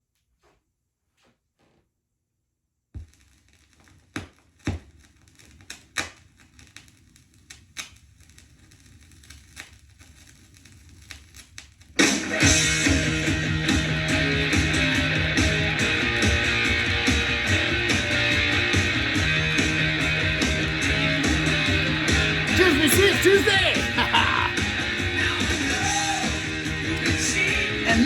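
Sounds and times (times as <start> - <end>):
vinyl crackling and popping: 2.9 - 28.0
rock song with electric guitar: 12.2 - 28.0.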